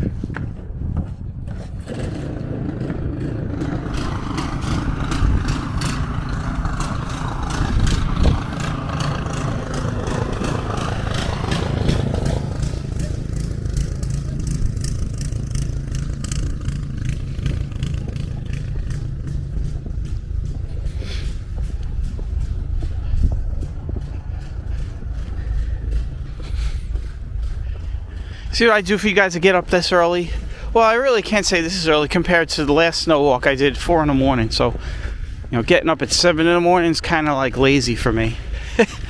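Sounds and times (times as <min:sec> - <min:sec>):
wind rumbling on microphone: 0:00.0 - 0:39.0
vehicle passing: 0:01.6 - 0:39.0
footsteps crunching in snow: 0:14.7 - 0:36.7.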